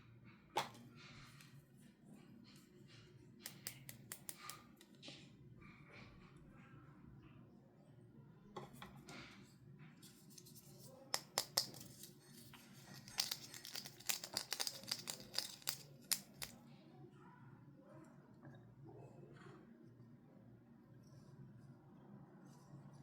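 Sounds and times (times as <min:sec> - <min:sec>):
packaging clicks and crinkly snips: 0:03.5 - 0:04.9, 0:11.2 - 0:16.6.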